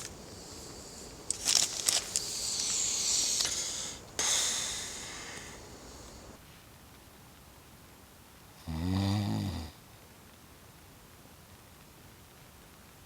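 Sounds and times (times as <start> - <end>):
sleeping gear rustling: 0.0 - 4.0.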